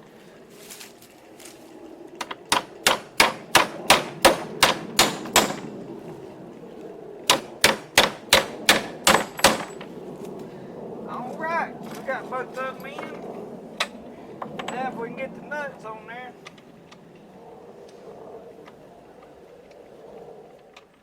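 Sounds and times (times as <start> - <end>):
hammer tapping metal bolts: 7.3 - 9.8.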